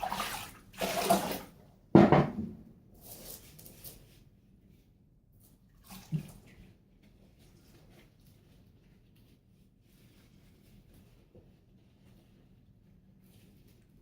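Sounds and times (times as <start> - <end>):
water splashing in bathtub: 0.0 - 1.7, 5.4 - 7.8
loud knock: 2.0 - 2.6.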